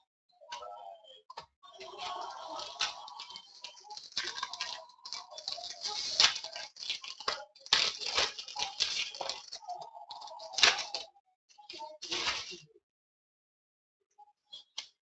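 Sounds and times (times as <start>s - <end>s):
cards rustling and clicking: 1.9s - 11.0s.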